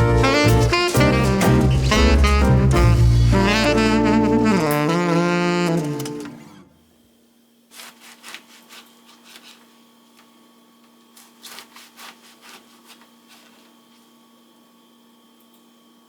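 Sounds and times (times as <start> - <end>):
faint rubbing and brushing: 7.7 - 9.8, 11.2 - 14.0.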